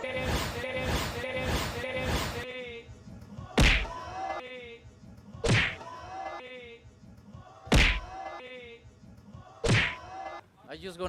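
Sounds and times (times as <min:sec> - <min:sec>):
hard sharp slap: 0:03.6 - 0:03.9, 0:05.5 - 0:05.8, 0:07.7 - 0:08.1.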